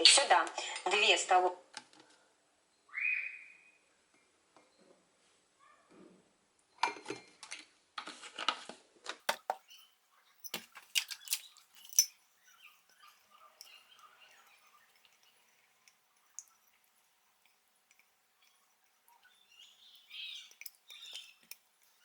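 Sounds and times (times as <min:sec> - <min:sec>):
metal spoon clinking on dishes: 0:09.3 - 0:22.0.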